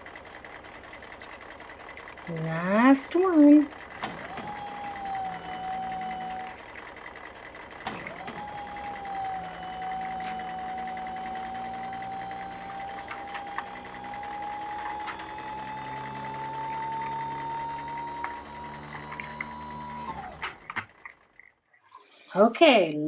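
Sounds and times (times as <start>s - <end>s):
toy motor whining: 4.0s - 6.8s, 7.9s - 21.2s.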